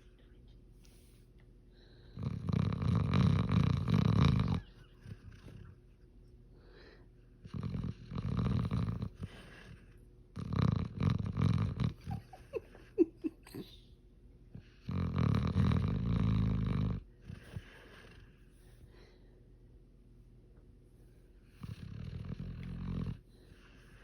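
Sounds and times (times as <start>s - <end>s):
loud rasping snores: 2.2s - 4.6s, 7.5s - 9.1s, 10.4s - 12.0s, 14.8s - 17.0s, 21.6s - 23.2s.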